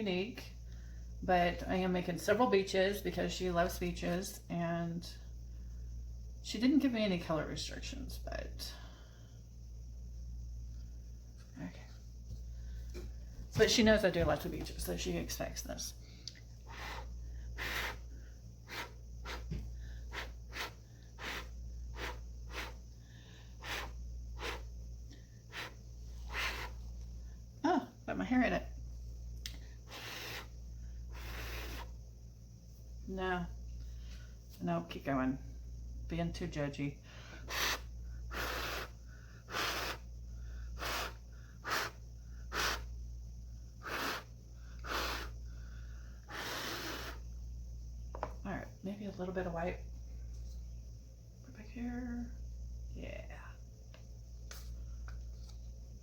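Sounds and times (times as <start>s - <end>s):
steady low hum: 0.0s - 56.0s
puffs of breath blown by mouth: 16.6s - 24.7s, 31.1s - 32.0s, 37.3s - 42.9s, 43.8s - 47.2s.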